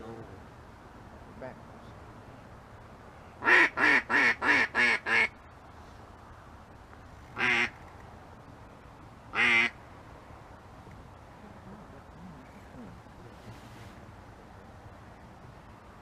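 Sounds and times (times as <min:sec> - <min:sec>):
duck call quacks: 0:03.4 - 0:05.3, 0:07.4 - 0:07.7, 0:09.4 - 0:09.7.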